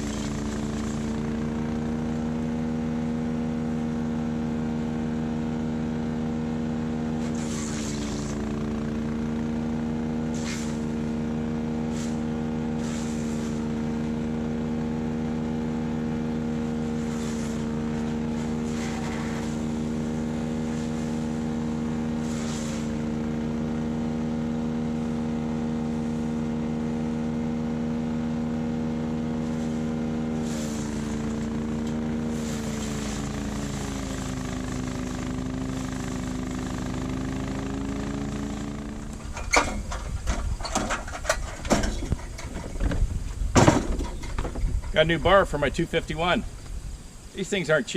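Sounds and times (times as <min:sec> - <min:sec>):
tractor diesel engine running: 0:00.0 - 0:47.9
knocks and rattles: 0:39.0 - 0:45.0.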